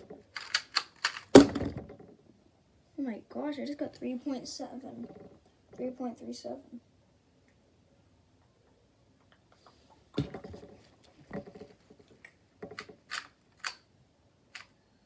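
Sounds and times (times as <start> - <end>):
plastic puzzle cube clicking: 0.0 - 1.7, 12.2 - 13.8, 14.5 - 14.7.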